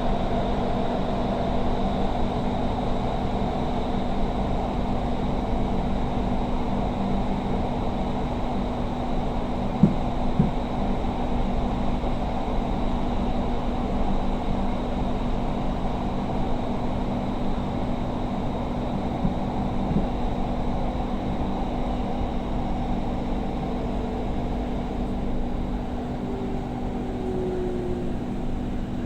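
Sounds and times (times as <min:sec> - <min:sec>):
train carriage rumble: 0:00.0 - 0:29.0
faint gliding tone: 0:25.6 - 0:29.0.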